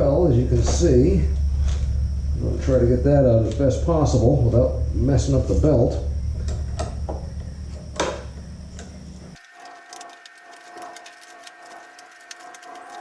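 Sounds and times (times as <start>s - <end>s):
low background hum: 0.0s - 13.0s
fine rapid ticking: 9.4s - 13.0s.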